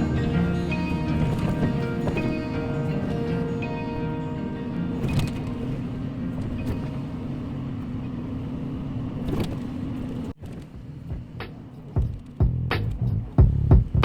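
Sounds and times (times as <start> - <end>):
metallic clank: 0.0 - 7.3
diesel engine rumbling: 0.0 - 14.0.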